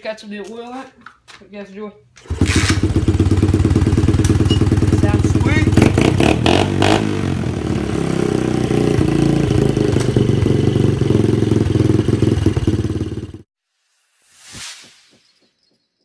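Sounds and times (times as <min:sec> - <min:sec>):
motorbike engine idling: 0:02.2 - 0:13.4.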